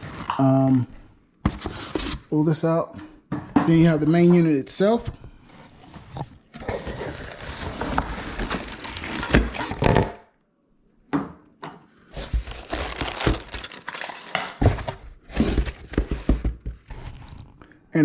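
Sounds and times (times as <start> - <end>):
cardboard and packing rustling: 0.0 - 2.4, 4.8 - 10.1, 12.1 - 17.6.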